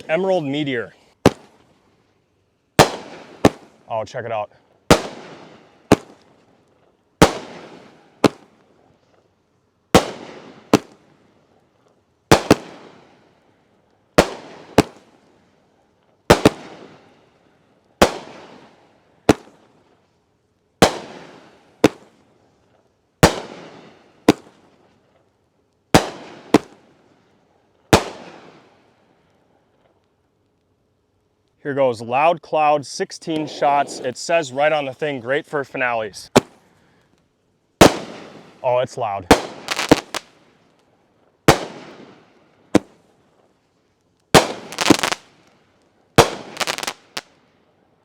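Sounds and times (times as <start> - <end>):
fireworks cake bangs: 1.2 - 1.6, 2.8 - 3.8, 4.9 - 6.3, 10.0 - 11.0, 12.3 - 13.0, 16.3 - 17.0, 26.0 - 26.8, 36.3 - 36.6, 37.8 - 38.6, 39.2 - 40.3, 41.5 - 42.1, 44.3 - 45.2, 46.2 - 47.2.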